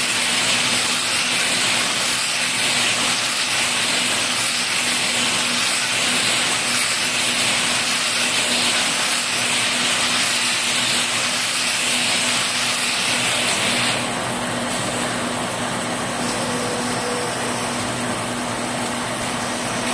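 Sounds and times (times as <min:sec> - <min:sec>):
baler machine running: 0:13.8 - 0:19.9.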